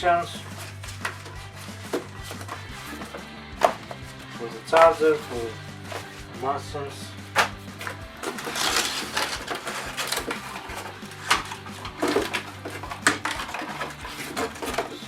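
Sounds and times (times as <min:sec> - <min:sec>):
plastic parts clicking and knocking: 0:00.5 - 0:04.0, 0:07.4 - 0:15.0
packaging crinkling: 0:08.2 - 0:10.9.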